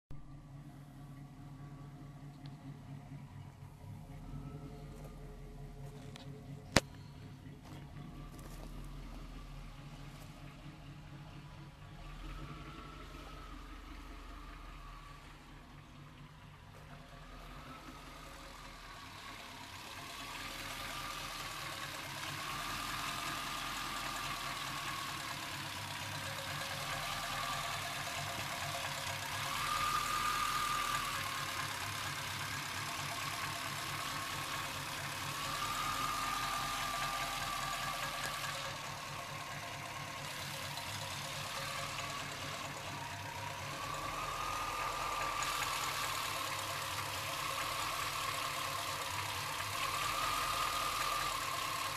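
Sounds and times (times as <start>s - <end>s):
engine idling roughly: 0.1s - 51.9s.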